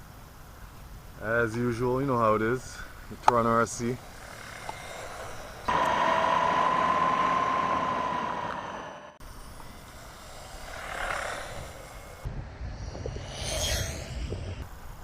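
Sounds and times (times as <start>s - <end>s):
toy car electric motor whining: 3.9s - 12.3s.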